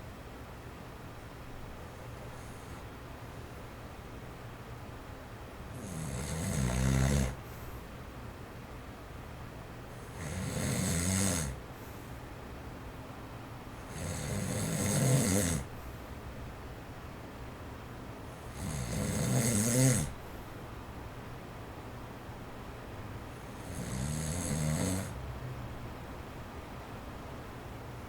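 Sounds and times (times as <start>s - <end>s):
electric fan running: 0.0s - 28.0s
man snoring: 5.8s - 7.4s, 10.1s - 11.6s, 13.9s - 15.7s, 18.5s - 20.2s, 23.6s - 25.2s.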